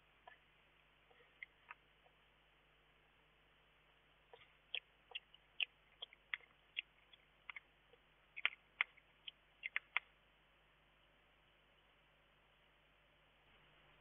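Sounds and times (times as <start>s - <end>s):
hedgehog clicking: 4.3s - 10.1s.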